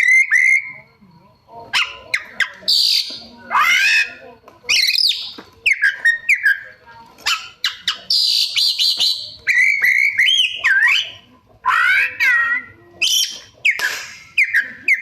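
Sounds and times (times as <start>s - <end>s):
songbird singing varied song: 4.7s - 6.7s.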